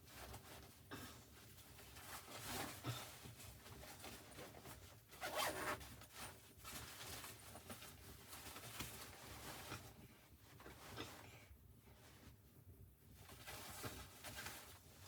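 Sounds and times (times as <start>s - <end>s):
zipper being pulled: 5.2s - 5.8s.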